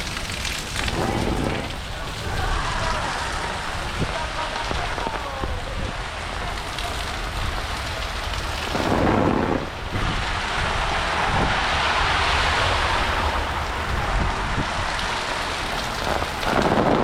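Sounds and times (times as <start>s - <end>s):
heavy rain pouring: 0.0s - 17.0s
low thunder rumble: 0.5s - 6.0s, 7.3s - 15.0s.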